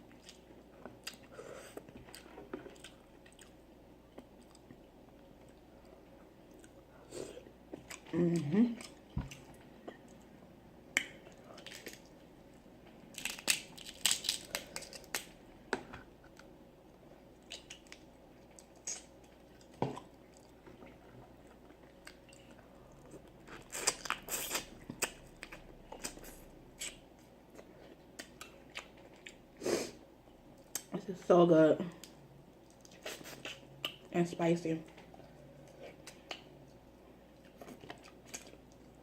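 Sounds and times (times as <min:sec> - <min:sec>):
chewing and lip-smacking: 0:00.0 - 0:06.8, 0:17.4 - 0:29.4, 0:32.6 - 0:34.1, 0:35.0 - 0:39.0.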